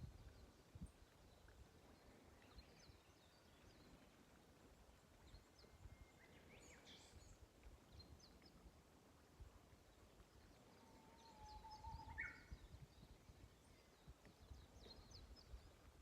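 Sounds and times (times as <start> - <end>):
faint bird chirps: 5.2 - 8.4, 10.4 - 15.8.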